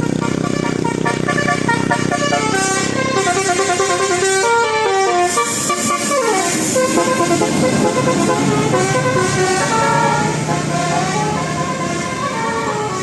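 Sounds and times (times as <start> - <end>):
bus musical horn: 0.0 - 13.0.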